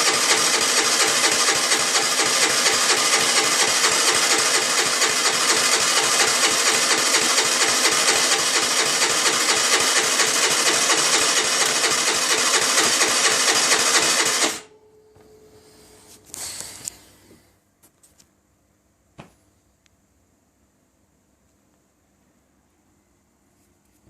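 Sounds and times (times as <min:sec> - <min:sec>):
scooter engine clattering: 0:00.0 - 0:14.6
faint hum: 0:14.6 - 0:24.0.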